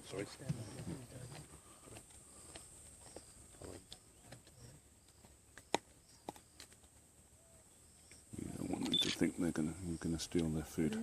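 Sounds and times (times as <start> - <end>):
faint crunching and clicks: 0.1 - 7.2.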